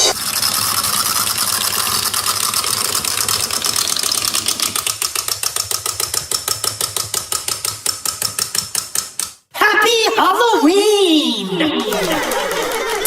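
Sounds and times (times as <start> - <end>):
rapid clicks: 0.0 - 9.4.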